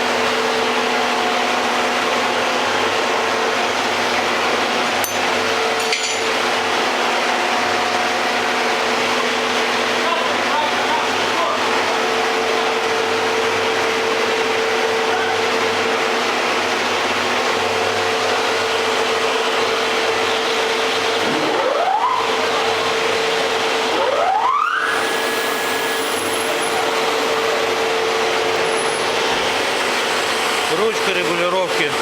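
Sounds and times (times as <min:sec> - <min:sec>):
workshop machinery humming: 0:00.0 - 0:32.0
rising motor whine: 0:16.9 - 0:30.8.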